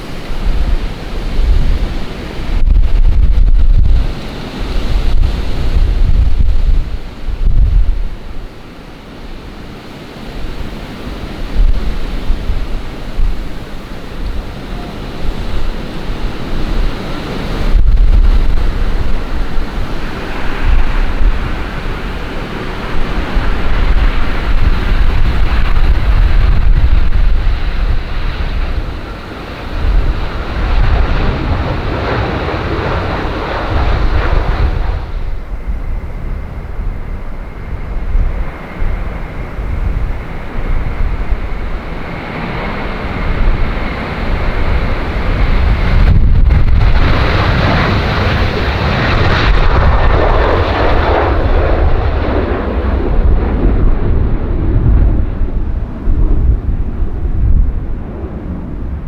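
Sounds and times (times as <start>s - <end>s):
jet airliner engines roaring: 0.0s - 59.0s
wind gusting on microphone: 0.0s - 59.0s.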